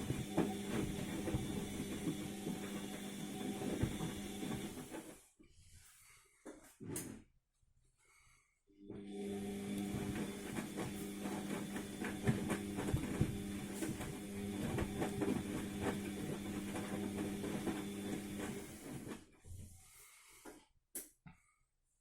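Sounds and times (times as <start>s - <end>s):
washing machine motor hum: 0.0s - 5.2s, 8.8s - 19.3s.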